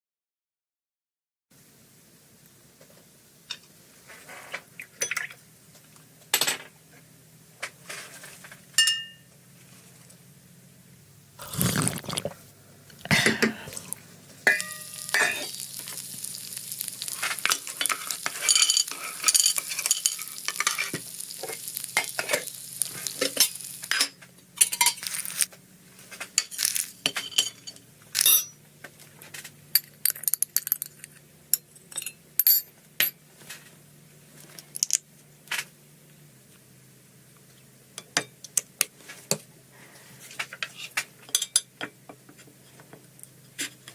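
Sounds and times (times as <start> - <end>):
dense sizzle of frying in oil: 1.5 - 11.5, 12.3 - 29.7
utensils clinking against a pan: 8.8 - 9.3, 14.4 - 15.6, 17.0 - 22.5, 23.1 - 25.3, 26.4 - 28.6, 29.8 - 32.7, 40.6 - 42.0.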